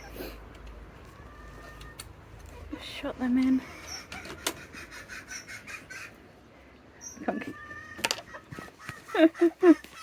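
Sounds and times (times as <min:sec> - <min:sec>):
chickens clucking: 0:01.5 - 0:10.0.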